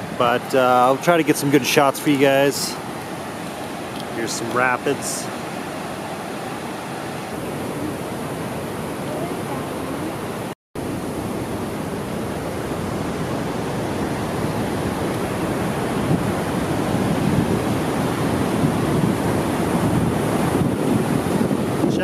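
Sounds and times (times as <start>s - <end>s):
waterfall roaring: 0.0s - 22.0s
wind in microphone: 13.1s - 22.0s.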